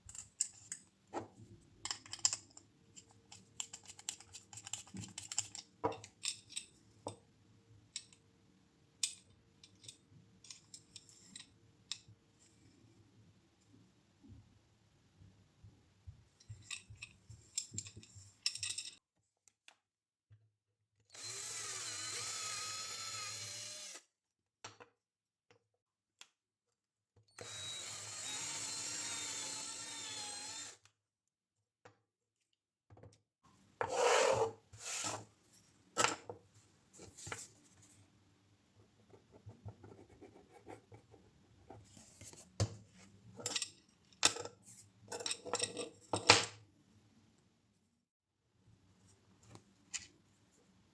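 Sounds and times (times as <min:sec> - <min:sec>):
electric power tool motor whine: 0:27.4 - 0:30.8.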